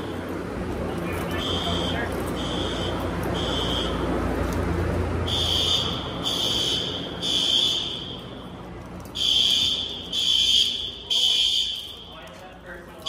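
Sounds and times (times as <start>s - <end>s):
fire alarm beeps: 1.2s - 4.2s, 5.2s - 12.2s.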